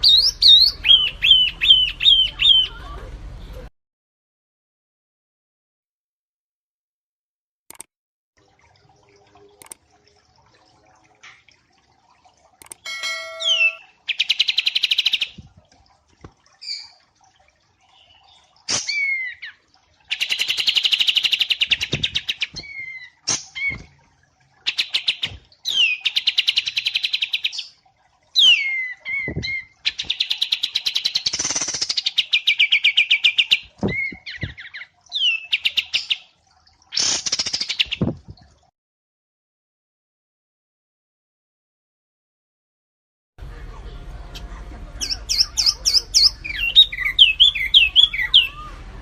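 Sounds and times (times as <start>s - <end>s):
songbird rattling trills: 12.7s - 15.2s
whistled bird notes sliding down: 12.9s - 13.8s.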